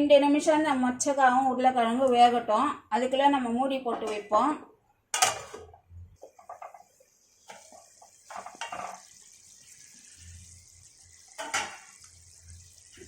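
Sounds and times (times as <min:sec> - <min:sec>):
pot simmering with soft hiss: 0:04.8 - 0:13.0.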